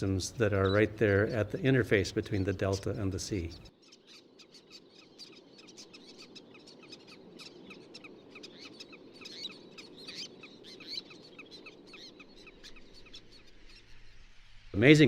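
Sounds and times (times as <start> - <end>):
birds chattering: 0.0 - 15.0
low background noise: 0.0 - 15.0.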